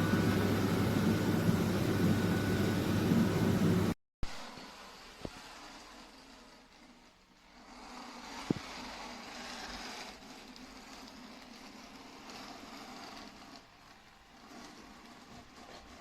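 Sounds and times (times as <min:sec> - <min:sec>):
robot vacuum motor hum: 0:00.0 - 0:04.0.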